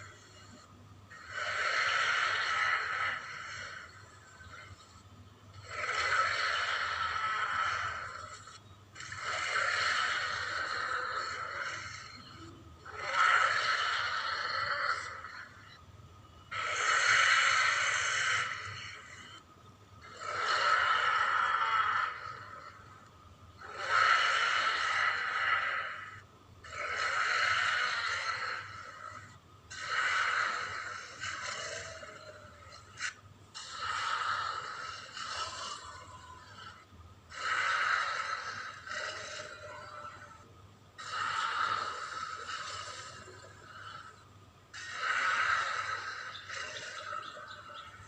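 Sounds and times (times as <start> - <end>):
hoarse breathy dinosaur roars: 9.0 - 15.7, 16.5 - 19.4.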